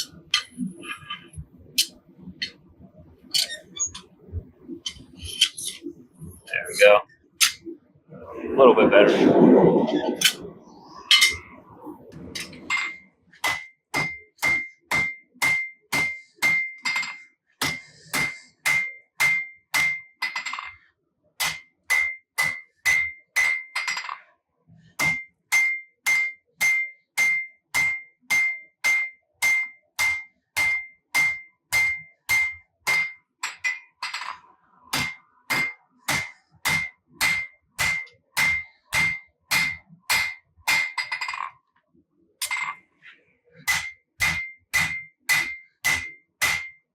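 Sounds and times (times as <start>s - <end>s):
hammer ringing on steel: 13.4s - 20.2s, 21.4s - 23.8s, 25.0s - 33.8s, 35.0s - 41.0s, 43.7s - 46.8s.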